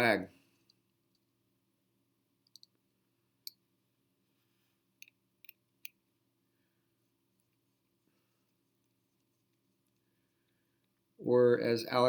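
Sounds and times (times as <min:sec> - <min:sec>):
small light clicks: 0:02.4 - 0:02.8.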